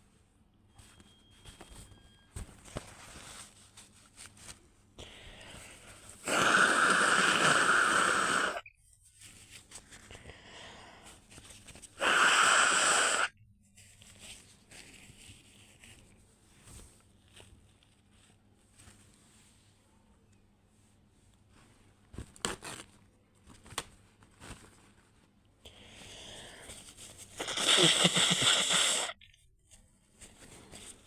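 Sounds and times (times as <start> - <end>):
person breathing wheezily: 5.0 - 8.6, 10.1 - 11.2, 12.0 - 13.3, 25.7 - 29.2.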